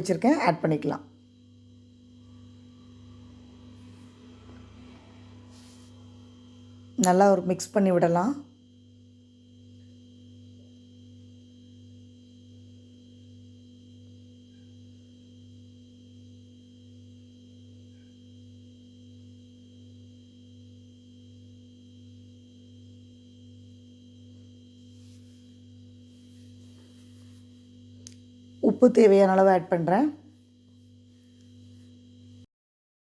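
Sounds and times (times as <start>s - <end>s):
faint electrical hum: 0.0s - 32.4s
thin high whine: 1.7s - 8.3s, 24.2s - 32.5s.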